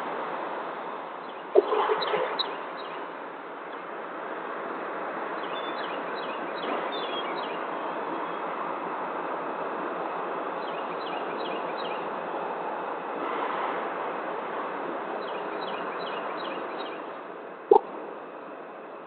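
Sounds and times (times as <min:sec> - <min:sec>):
outdoor background rush: 0:00.0 - 0:19.0.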